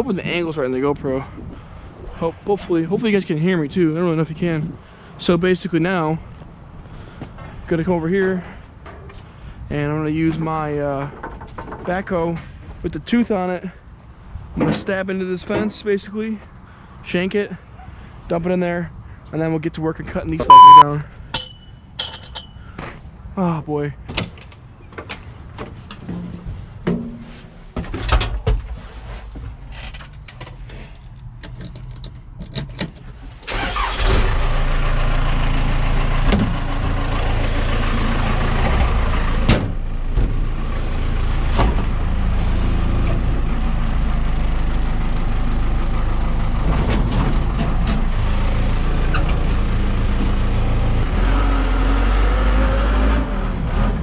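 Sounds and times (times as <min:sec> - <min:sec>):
backhoe diesel engine running: 0:33.5 - 0:51.0.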